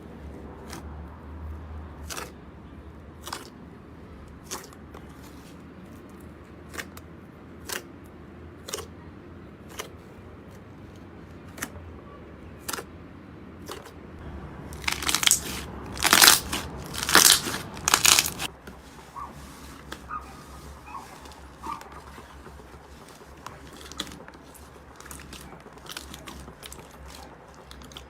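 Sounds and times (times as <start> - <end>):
slime crunching and crackling: 3.2 - 3.6, 4.4 - 5.4, 13.6 - 18.5, 21.1 - 28.0
slime clicking and popping: 14.8 - 18.5.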